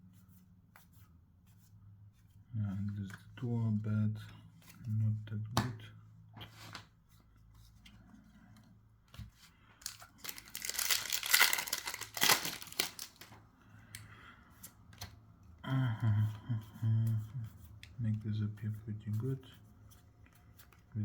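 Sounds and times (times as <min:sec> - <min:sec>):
foil wrapper tearing and crinkling: 0:09.8 - 0:13.3.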